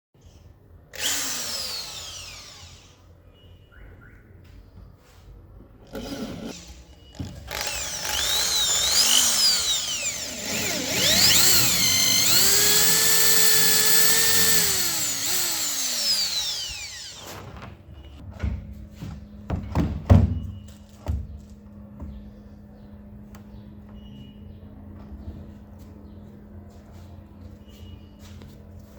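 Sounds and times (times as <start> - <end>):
power tool motor whining: 0.9 - 3.0, 5.9 - 17.6
knocks: 18.3 - 21.4.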